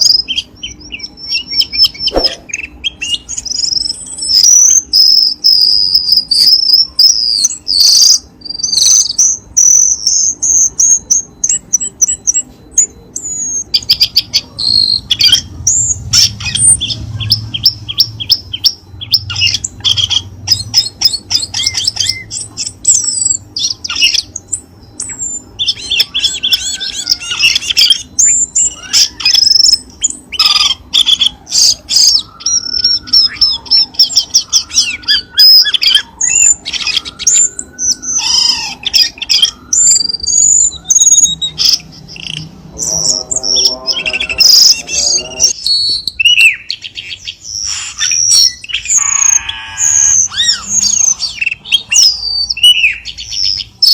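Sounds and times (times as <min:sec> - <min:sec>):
bird chirps and trills: 0:00.0 - 0:53.9
bird sliding whistles: 0:02.0 - 0:02.6.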